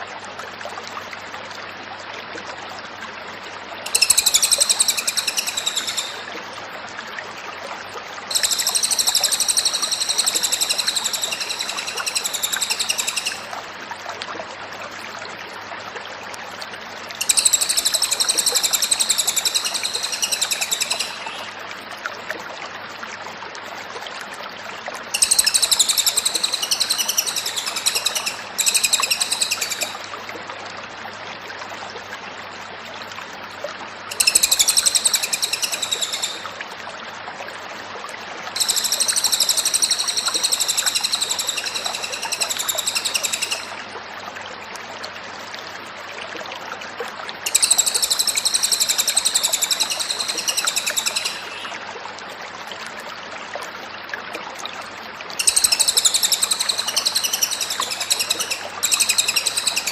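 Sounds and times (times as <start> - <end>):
songbird singing high trills: 3.9 - 6.3, 8.3 - 13.5, 17.2 - 21.5, 25.2 - 30.0, 34.1 - 36.6, 38.6 - 43.7, 47.5 - 51.7, 55.4 - 59.9.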